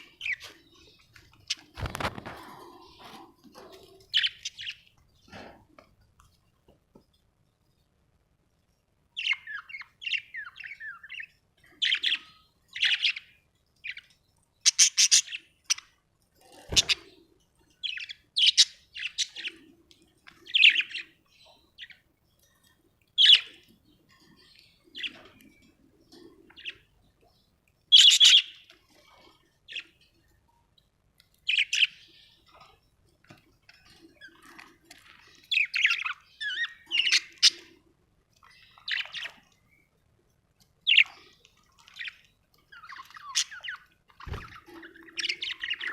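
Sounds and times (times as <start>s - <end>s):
budgerigars chirping and squawking: 0.0s - 5.7s, 9.2s - 17.2s, 17.8s - 22.0s, 23.2s - 26.9s, 27.9s - 30.0s, 31.5s - 32.7s, 33.7s - 37.8s, 38.4s - 39.5s, 40.9s - 45.9s.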